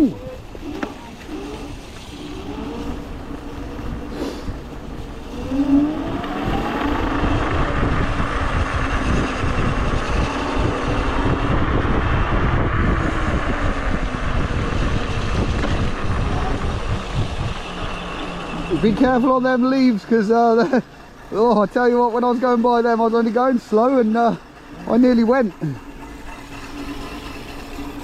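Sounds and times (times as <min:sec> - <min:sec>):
wind rumble on microphone: 0:00.0 - 0:20.0
electric scooter motor whining: 0:00.0 - 0:28.0.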